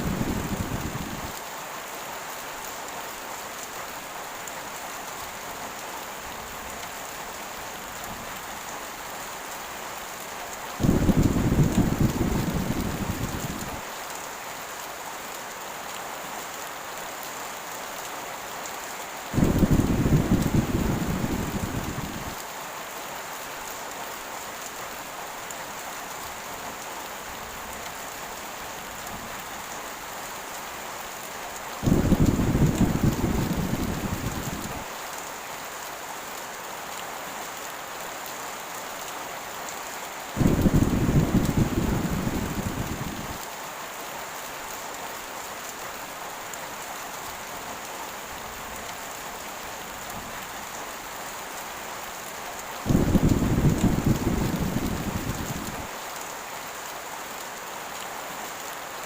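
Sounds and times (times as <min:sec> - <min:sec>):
thunder rumbling: 0:00.0 - 0:01.3, 0:10.8 - 0:13.8, 0:19.4 - 0:22.4, 0:31.8 - 0:34.8, 0:40.4 - 0:43.4, 0:52.9 - 0:55.9
heavy rain falling: 0:00.0 - 0:59.0.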